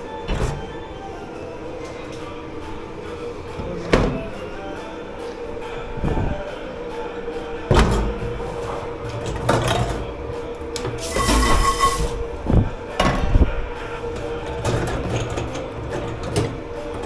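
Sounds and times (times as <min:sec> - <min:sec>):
hiss: 0:11.0 - 0:12.2.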